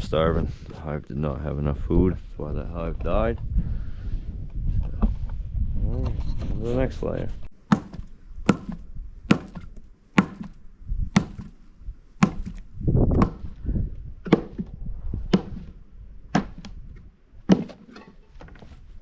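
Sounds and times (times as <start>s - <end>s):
hand tool chopping wood: 7.7s - 11.6s, 12.2s - 13.6s, 14.2s - 15.7s, 16.3s - 16.8s, 17.4s - 18.6s.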